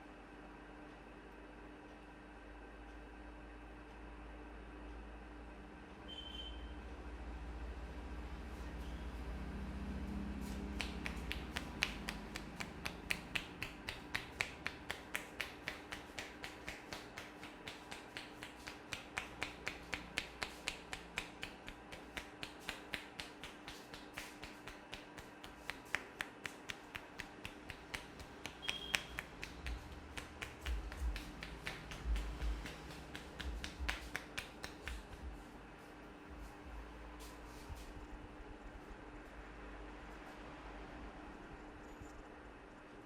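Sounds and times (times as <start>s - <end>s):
hands clapping in rhythm: 10.4s - 35.5s.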